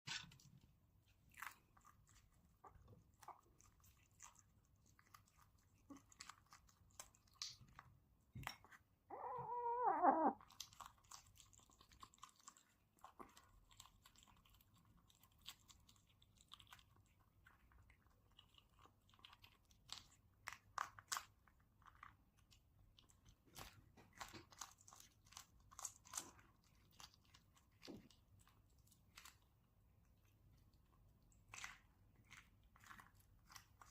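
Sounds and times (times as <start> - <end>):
kitten chewing and crunching: 0.1 - 33.9
kitten mew: 9.1 - 10.4.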